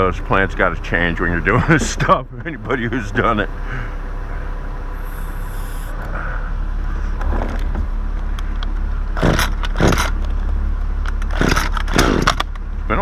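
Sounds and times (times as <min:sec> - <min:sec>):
steady low rumble: 0:00.0 - 0:13.0
chainsaw starter cord yanked: 0:09.2 - 0:10.3, 0:11.0 - 0:12.6.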